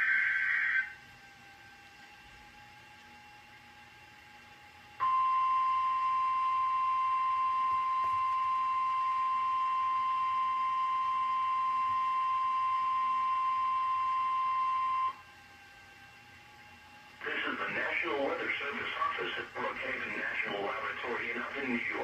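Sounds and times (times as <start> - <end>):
steady alarm tone: 0.0 - 1.0, 5.0 - 15.3
faint static: 17.0 - 22.0.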